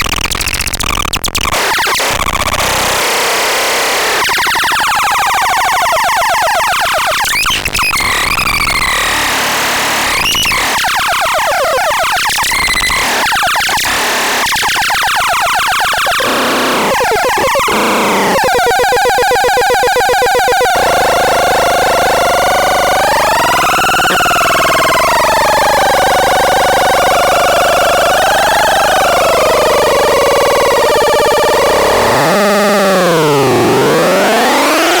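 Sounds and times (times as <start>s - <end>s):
synthesizer sweeps and pitch glides: 16.8s - 35.0s
buzzy wavering synth tone: 16.9s - 34.9s.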